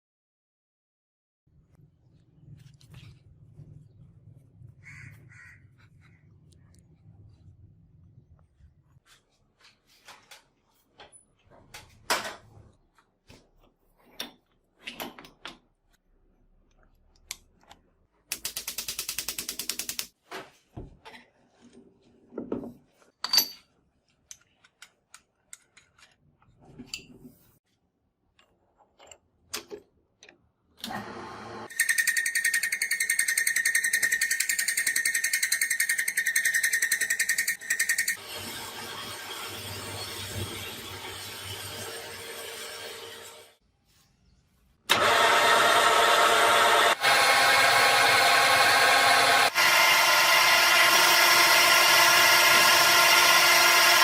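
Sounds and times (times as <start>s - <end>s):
tools clicking and knocking: 31.7s - 38.2s
power tool whining: 44.9s - 54.0s.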